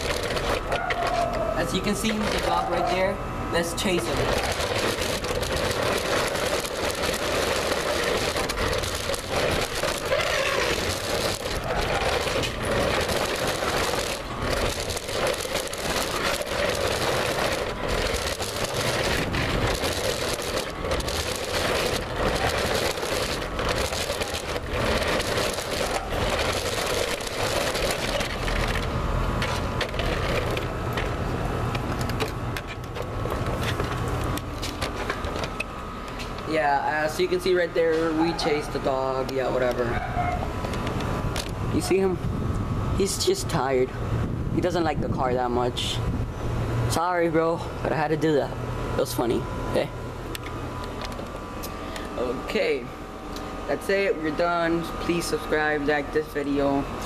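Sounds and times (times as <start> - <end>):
chassis rattling and knocking: 0.0 - 2.7, 4.0 - 41.7
toy car motor whine: 0.0 - 31.1.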